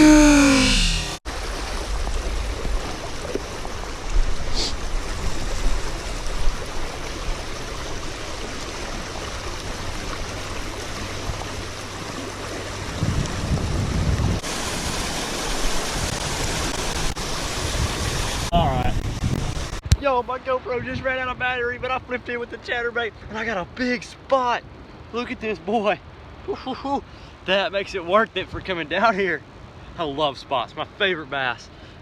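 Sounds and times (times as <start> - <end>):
floodwater rushing through spillway: 1.2 - 20.7
wind rumble on microphone: 9.0 - 14.4, 15.8 - 20.0, 20.7 - 21.8.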